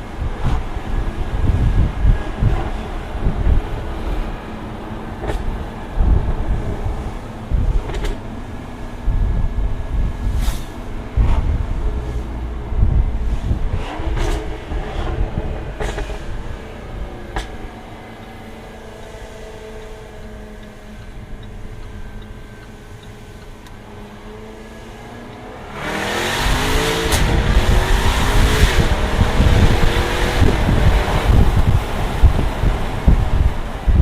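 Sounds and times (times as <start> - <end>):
car engine accelerating: 0.0 - 34.0
exhaust cracks: 5.2 - 23.8, 25.7 - 34.0.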